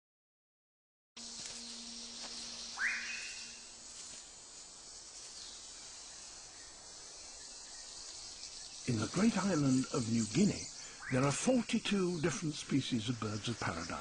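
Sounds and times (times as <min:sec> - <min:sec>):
high-pitched insect chorus: 0:01.2 - 0:14.0
upward sweeping bird call: 0:01.8 - 0:03.7.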